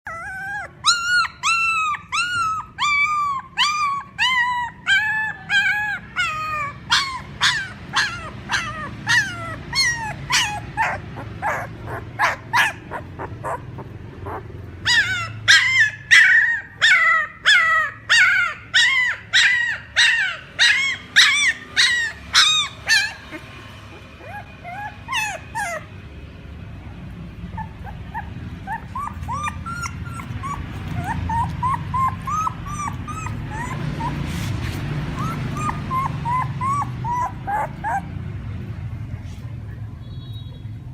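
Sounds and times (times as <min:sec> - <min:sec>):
puppy whining: 0:00.0 - 0:38.7.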